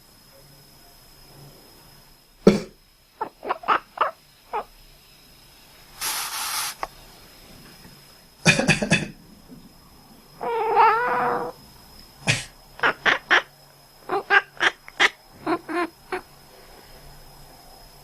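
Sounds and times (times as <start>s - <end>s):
breathy hissing burst: 5.9s - 6.9s
person coughing: 8.5s - 9.1s
cat chirping: 10.4s - 11.5s, 12.8s - 13.5s, 14.1s - 16.2s
cat wavering murmur: 10.4s - 11.6s, 12.8s - 16.3s.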